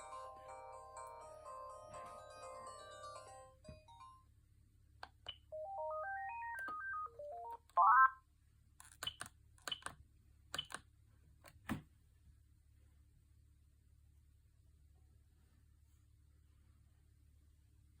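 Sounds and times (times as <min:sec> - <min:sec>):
cordless phone ringtone melody: 0:00.0 - 0:04.2, 0:05.5 - 0:08.2.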